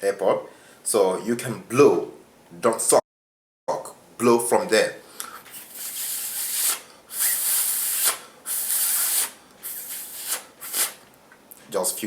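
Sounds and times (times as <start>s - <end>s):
hissing breath puffs: 5.3s - 11.0s.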